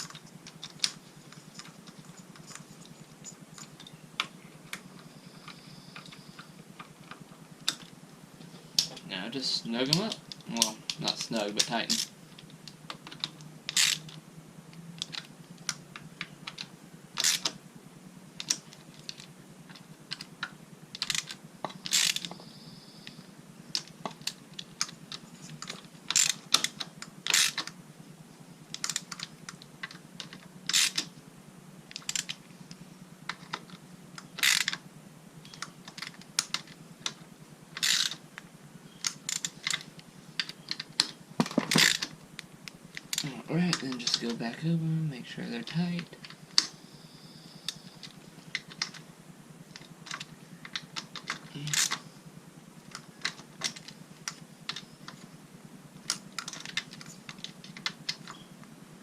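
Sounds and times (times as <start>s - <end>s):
hand ratchet clicking: 13.0s - 14.2s, 17.2s - 17.6s, 21.0s - 22.4s, 23.8s - 27.7s, 30.3s - 31.1s, 31.9s - 32.4s, 34.2s - 34.8s, 37.8s - 38.2s, 39.0s - 39.8s, 40.4s - 42.1s, 50.1s - 52.0s.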